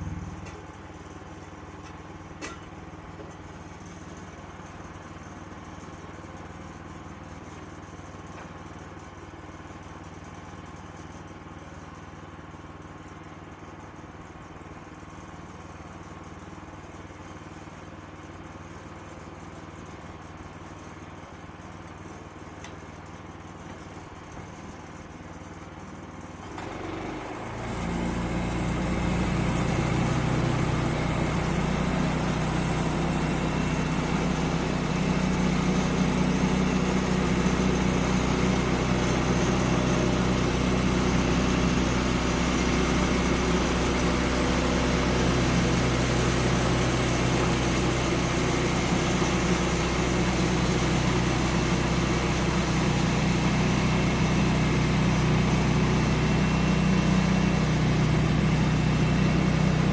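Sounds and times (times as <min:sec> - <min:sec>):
sawmill engine running: 0:26.3 - 0:59.9.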